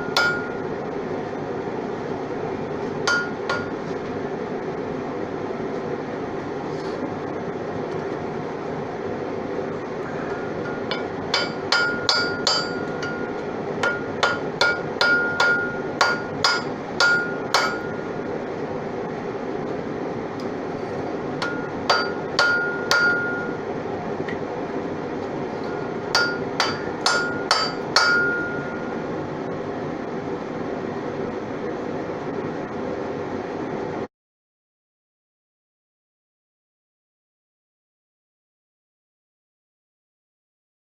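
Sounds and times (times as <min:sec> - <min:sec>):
hammer striking steel on anvil: 0:00.0 - 0:00.7, 0:03.0 - 0:03.8, 0:10.3 - 0:18.1, 0:21.4 - 0:23.6, 0:25.6 - 0:28.9
forge burner running: 0:00.0 - 0:34.1.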